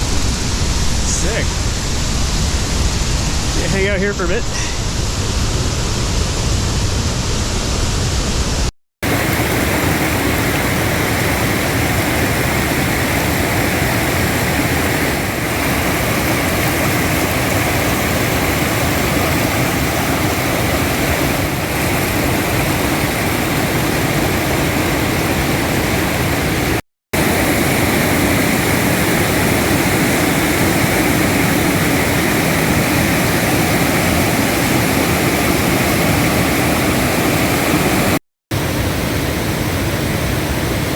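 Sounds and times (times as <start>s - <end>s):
river rapids rushing: 9.0s - 40.9s.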